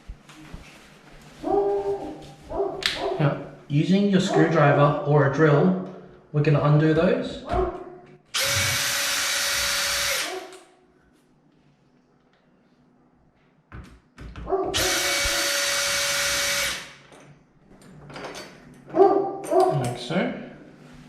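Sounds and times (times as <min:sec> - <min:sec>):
power drill backing out screws: 0:08.4 - 0:10.3.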